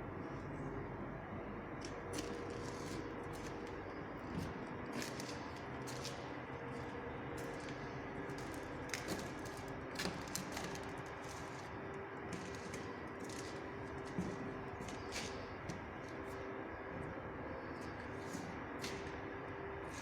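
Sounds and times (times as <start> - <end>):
steady hum: 0.0 - 20.0.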